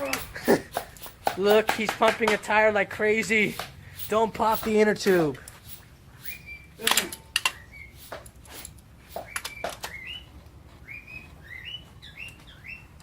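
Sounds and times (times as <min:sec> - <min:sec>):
bicycle pump squeaking and puffing: 0:00.0 - 0:02.0, 0:03.2 - 0:12.7.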